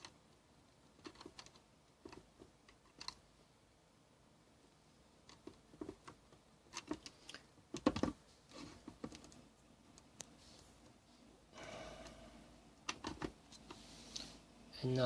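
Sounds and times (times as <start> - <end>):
plastic parts clicking and tapping: 0.9 - 3.2, 5.2 - 10.3, 12.8 - 13.8.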